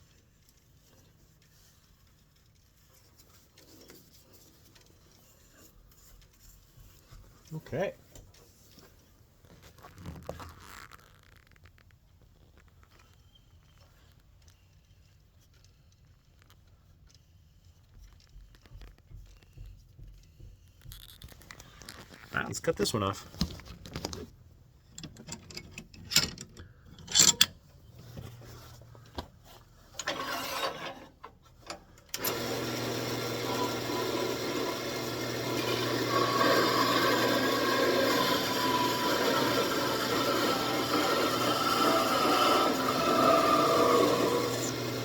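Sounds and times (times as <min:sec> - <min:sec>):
tool scraping spinning wood: 0:30.0 - 0:31.2, 0:32.2 - 0:45.0
wood lathe humming: 0:32.2 - 0:45.0.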